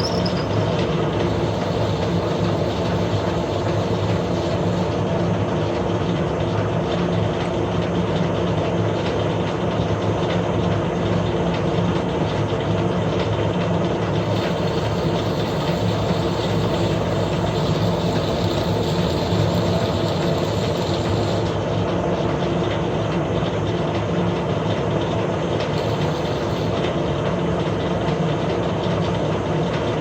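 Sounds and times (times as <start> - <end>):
metal lathe running: 0.0 - 5.2, 14.1 - 22.6, 25.5 - 27.8.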